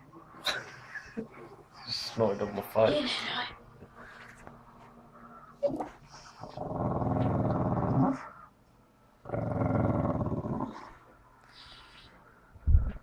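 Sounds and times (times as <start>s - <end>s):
dog growling: 5.7s - 8.5s, 9.2s - 11.0s.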